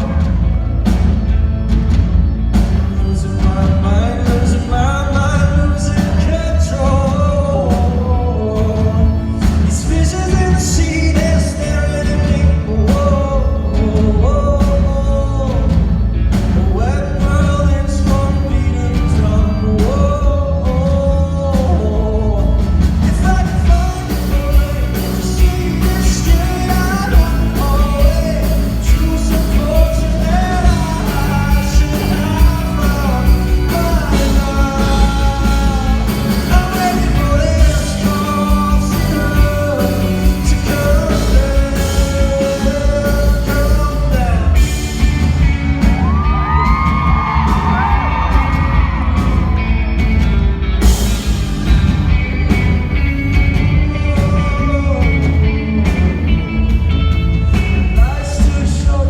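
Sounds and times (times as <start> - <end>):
man singing lead: 0.0 - 0.9, 2.8 - 50.0, 50.8 - 59.0
live rock band playing: 0.0 - 59.0.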